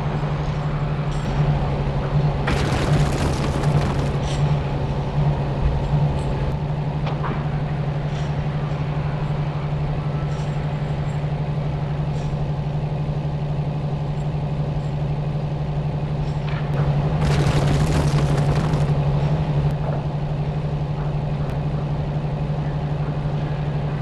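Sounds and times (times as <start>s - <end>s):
vehicle engine running: 2.5s - 6.6s, 16.8s - 19.7s.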